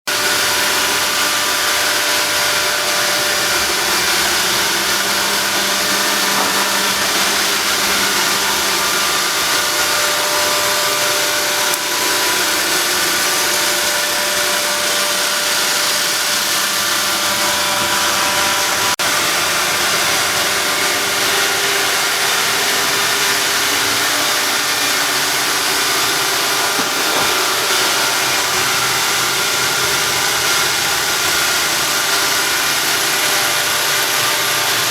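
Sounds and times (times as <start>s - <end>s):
robot vacuum cleaner whirring: 0.1s - 34.9s.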